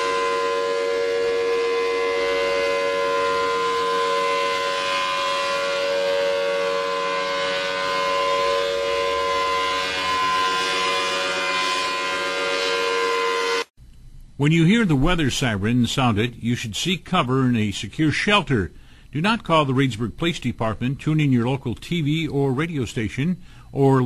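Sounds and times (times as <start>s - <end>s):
warning siren steady tone: 0.0s - 13.7s.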